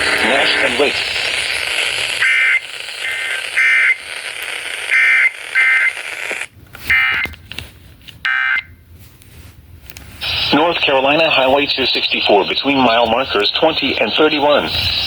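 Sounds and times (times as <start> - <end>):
harsh digital data buzzes: 0.0 - 6.5
radio hiss and crackle: 0.0 - 7.3, 10.2 - 15.0.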